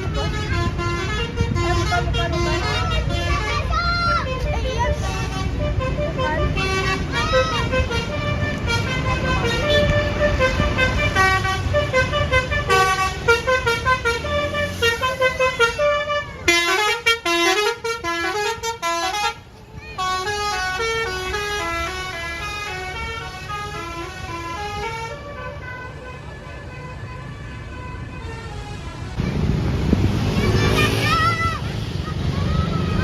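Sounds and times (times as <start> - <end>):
musical bus horn melody: 0.0 - 29.2
low engine rumble: 0.0 - 33.0.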